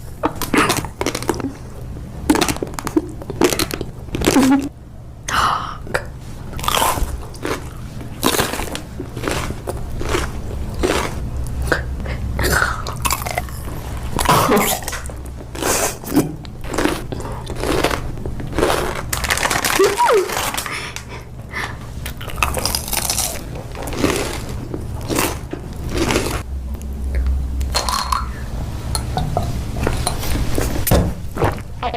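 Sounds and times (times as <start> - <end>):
person chewing crunchy food: 0.0 - 4.7, 6.0 - 21.2, 21.9 - 26.5.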